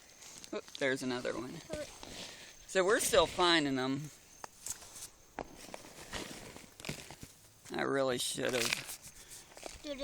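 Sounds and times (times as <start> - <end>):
hay rustling and crinkling: 4.7 - 7.4.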